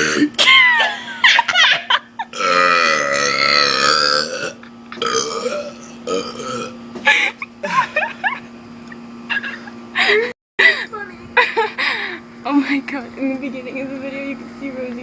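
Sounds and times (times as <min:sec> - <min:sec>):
person burping: 0:00.0 - 0:00.5, 0:02.3 - 0:06.8.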